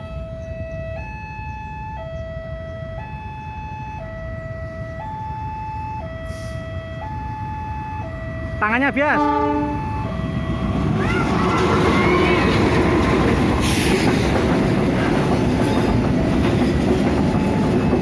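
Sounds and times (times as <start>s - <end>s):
two-tone siren: 0.0s - 12.4s.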